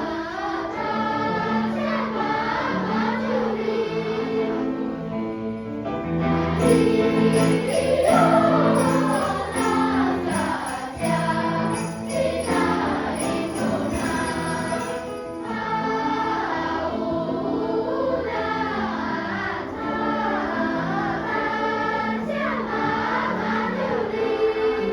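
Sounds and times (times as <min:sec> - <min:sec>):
choir singing: 0:00.0 - 0:05.4, 0:06.0 - 0:24.9
jingle bells shaking: 0:06.6 - 0:15.8.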